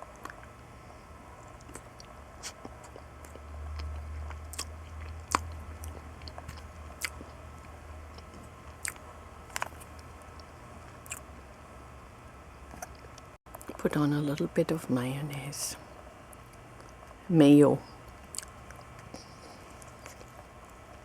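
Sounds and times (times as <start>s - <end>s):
person chewing: 1.4s - 11.3s, 12.7s - 13.8s, 18.1s - 21.0s.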